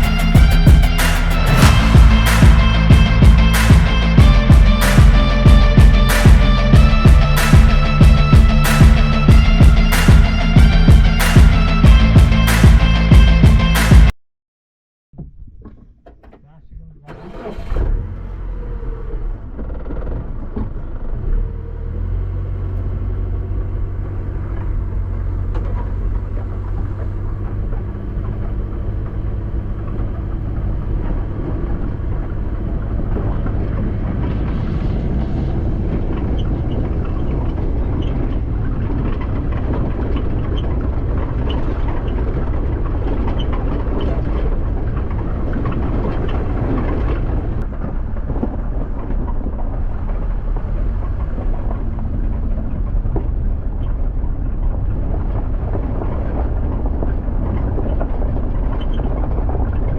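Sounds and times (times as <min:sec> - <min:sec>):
rough noise: 0:00.0 - 0:14.1
vehicle engine rumbling: 0:00.0 - 0:14.1, 0:15.5 - 0:59.9.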